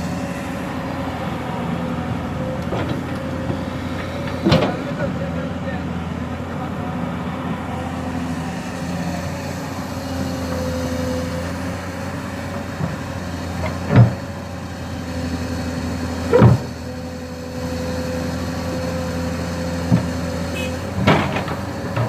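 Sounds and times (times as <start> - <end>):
excavator diesel engine running: 0.0 - 22.0.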